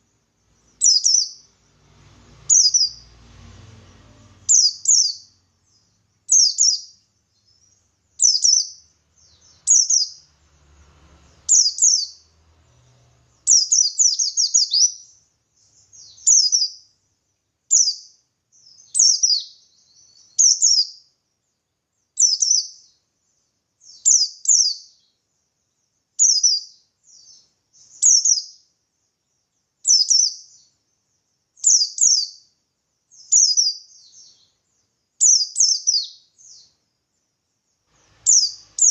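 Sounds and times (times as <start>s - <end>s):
bird chattering song: 0.0s - 1.8s, 2.4s - 3.2s, 4.2s - 10.5s, 11.2s - 28.7s, 29.3s - 36.9s, 37.7s - 38.9s.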